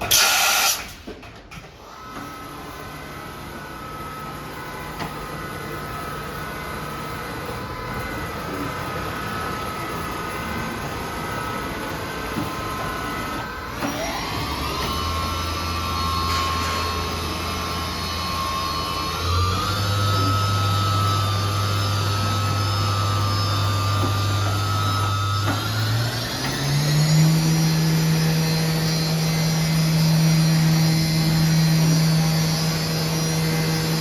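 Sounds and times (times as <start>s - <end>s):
machine multi-tone whine: 0.0s - 34.0s
low machine hum: 1.8s - 34.0s.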